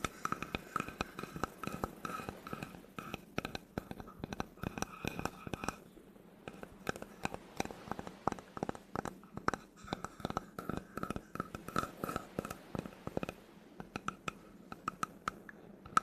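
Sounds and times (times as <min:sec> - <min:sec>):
taps and scratches on wood: 0:06.5 - 0:16.0.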